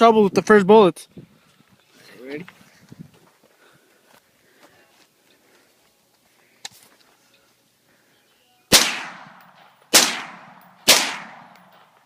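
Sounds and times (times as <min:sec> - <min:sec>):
rifle shots echoing: 0:08.7 - 0:12.0.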